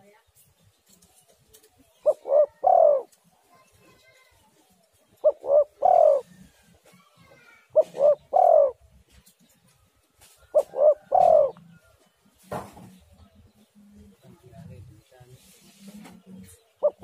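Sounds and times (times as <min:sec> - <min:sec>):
dove cooing: 0:02.0 - 0:03.2, 0:05.2 - 0:06.6, 0:07.3 - 0:08.9, 0:10.5 - 0:11.8, 0:16.6 - 0:17.0.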